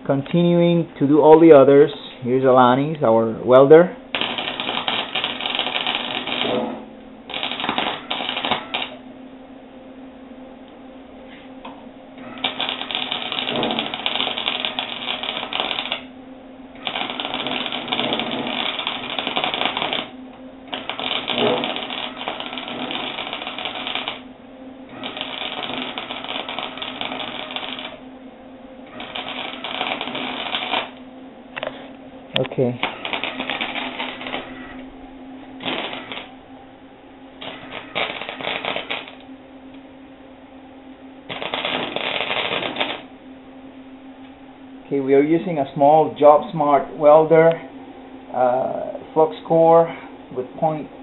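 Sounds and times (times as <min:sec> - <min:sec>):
welding arc crackling: 0:00.0 - 0:09.1, 0:12.2 - 0:28.1, 0:28.8 - 0:36.5, 0:37.3 - 0:39.8, 0:41.2 - 0:43.2
steady low hum: 0:00.0 - 0:51.0.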